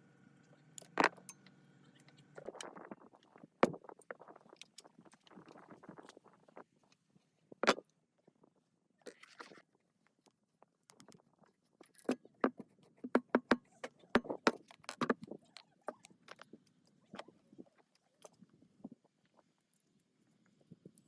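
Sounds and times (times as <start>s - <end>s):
clicks and knocks of parts handled: 11.8s - 16.5s.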